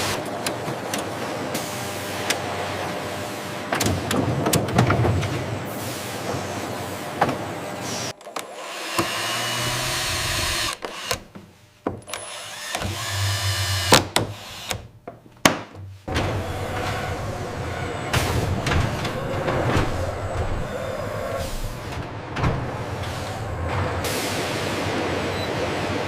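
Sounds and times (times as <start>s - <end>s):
factory machinery humming: 16.0s - 26.0s.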